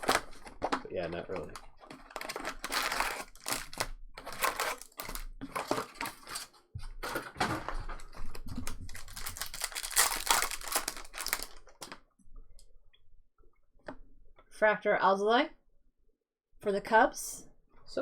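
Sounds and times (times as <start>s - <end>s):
trading cards snapping and rustling: 8.5s - 12.0s.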